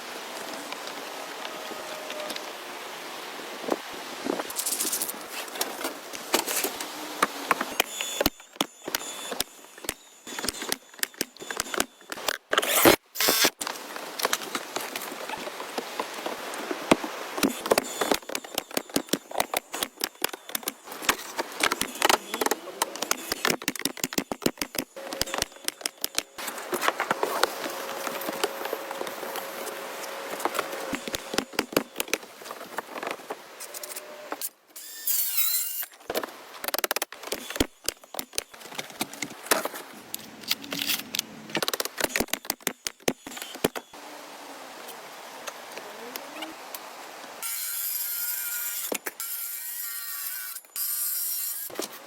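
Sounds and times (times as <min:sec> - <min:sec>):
woodworking tool clicks and knocks: 0:17.4 - 0:26.3.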